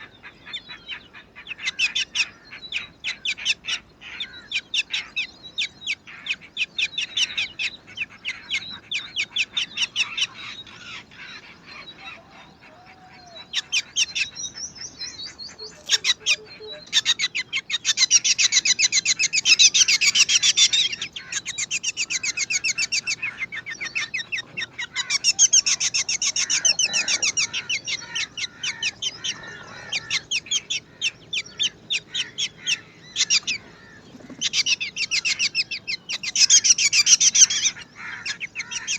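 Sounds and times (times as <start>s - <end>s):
nestlings chirping: 13.2s - 38.8s.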